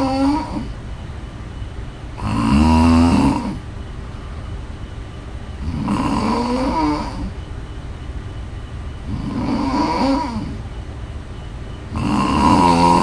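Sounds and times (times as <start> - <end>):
woman snoring: 0.0 - 0.8, 2.2 - 3.6, 5.6 - 7.4, 9.0 - 10.7, 11.9 - 13.0.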